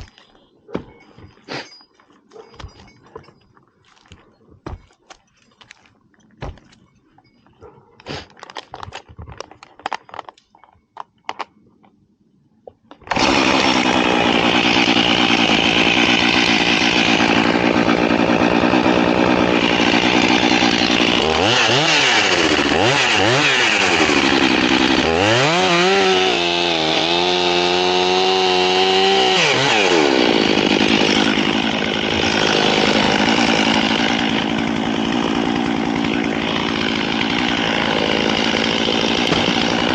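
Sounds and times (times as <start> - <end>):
chainsaw cutting wood: 13.0 - 39.9.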